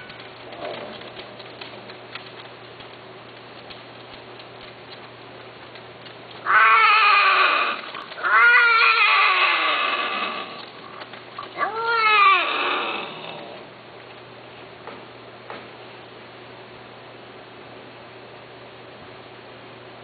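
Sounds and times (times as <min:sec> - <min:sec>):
cat meowing: 0:06.4 - 0:10.6, 0:11.6 - 0:13.5.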